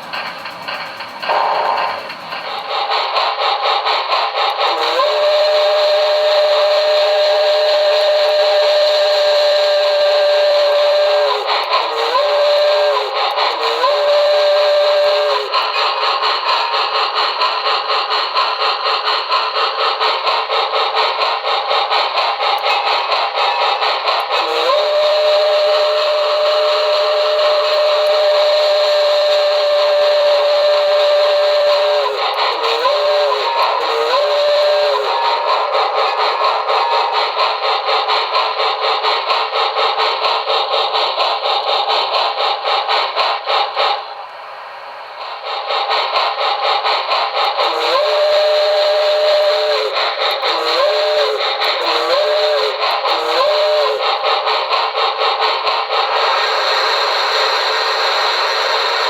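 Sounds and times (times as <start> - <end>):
steam locomotive whistle from speaker: 4.6 - 16.0, 23.6 - 37.5, 47.6 - 54.2.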